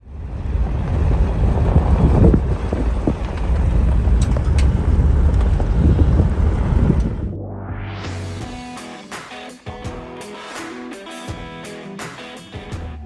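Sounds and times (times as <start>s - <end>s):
vehicle engine rumbling: 0.0s - 8.4s.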